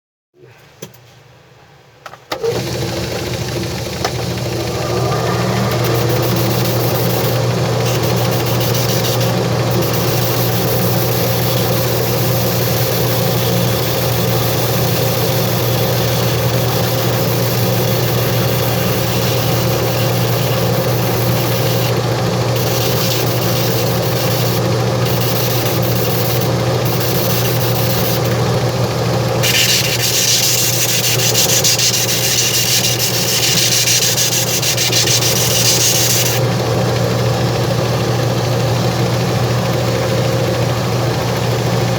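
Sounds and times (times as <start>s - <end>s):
sanding machine humming: 2.4s - 41.9s
hissy rasp of sole sanding: 5.8s - 21.9s, 22.6s - 28.3s, 29.4s - 36.4s.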